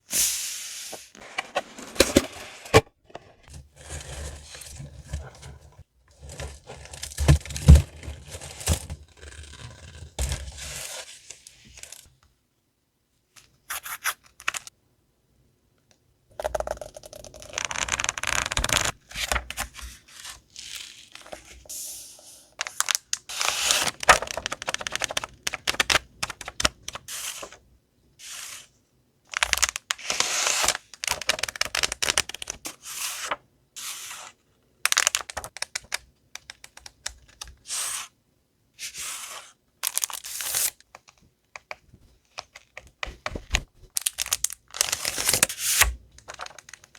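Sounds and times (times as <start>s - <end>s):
plastic and paper crinkling and tearing: 22.6s - 27.5s, 29.4s - 33.4s, 42.4s - 46.9s.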